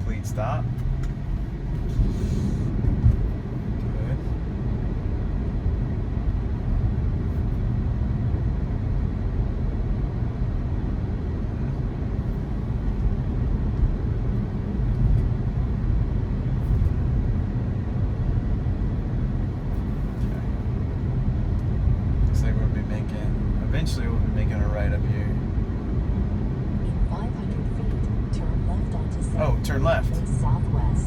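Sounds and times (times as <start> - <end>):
road and tyre rumble: 0.0 - 31.0.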